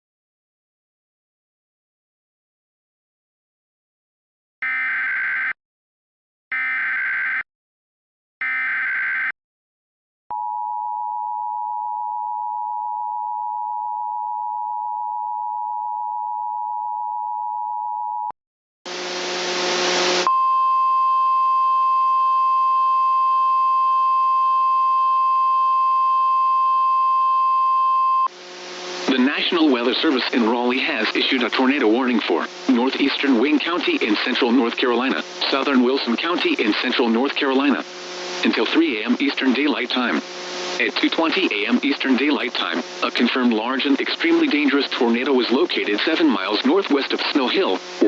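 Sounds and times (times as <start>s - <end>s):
burst of static: 18.9s - 20.3s, 28.3s - 48.0s
data bursts: 28.6s - 48.0s.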